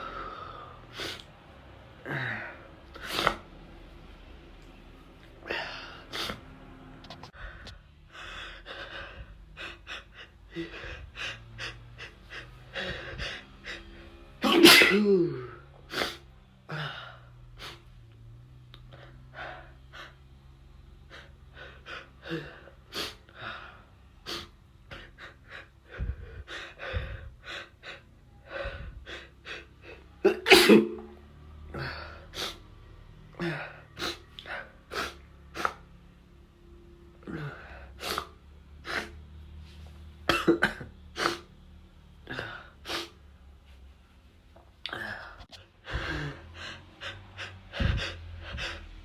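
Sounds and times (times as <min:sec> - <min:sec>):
person sneezing: 0:14.4 - 0:16.2, 0:30.2 - 0:31.1.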